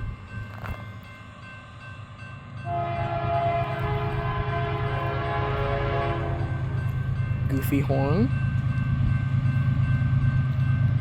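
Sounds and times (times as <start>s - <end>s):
freight train rumble: 0.0s - 11.0s
multi-chime locomotive air horn: 2.6s - 6.6s.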